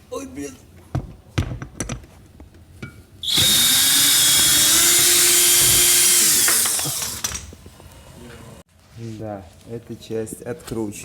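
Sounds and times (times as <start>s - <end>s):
electric drill motor whine: 3.2s - 7.4s.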